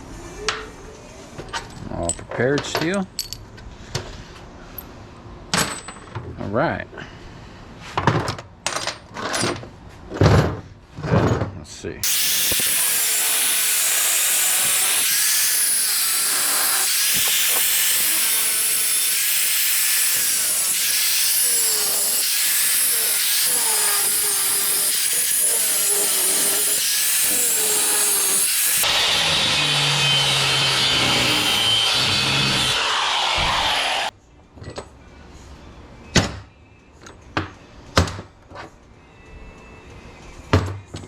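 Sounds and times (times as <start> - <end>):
power tool cutting metal: 12.0 - 34.1.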